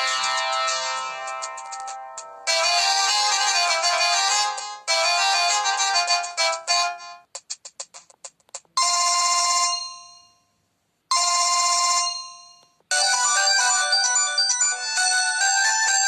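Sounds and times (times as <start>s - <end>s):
polyphonic ringtone melody: 0.0s - 7.3s, 11.1s - 16.0s
bright phone chime: 8.8s - 10.5s, 11.1s - 16.0s.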